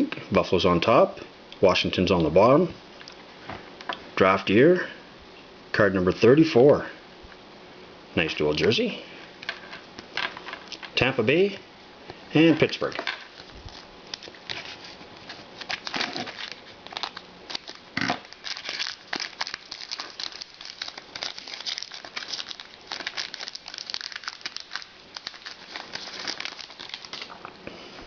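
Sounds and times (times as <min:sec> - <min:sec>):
card pack wrapper crinkling: 0:12.7 - 0:27.4.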